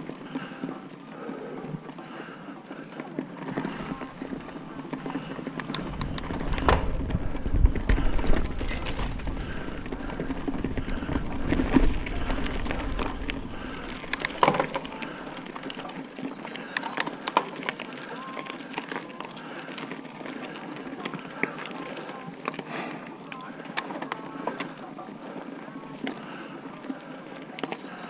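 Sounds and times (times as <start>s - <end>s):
bike clicks and rattles: 0.0s - 22.7s, 23.6s - 26.7s
bike tyre noise on dirt trail: 0.0s - 28.0s
wind rumble on microphone: 5.7s - 15.5s.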